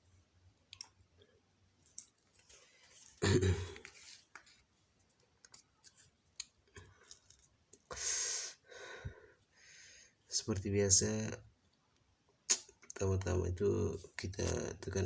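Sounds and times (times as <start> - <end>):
breath close to microphone: 7.9 - 10.2.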